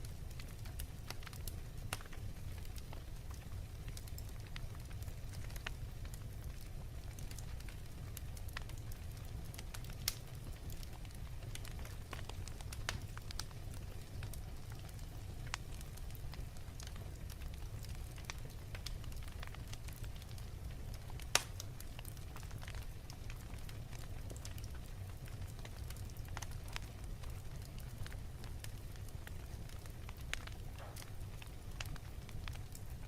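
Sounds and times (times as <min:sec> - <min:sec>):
fireplace fire crackling: 0:00.0 - 0:33.0
loud pop of fire: 0:21.3 - 0:21.6, 0:30.7 - 0:31.2.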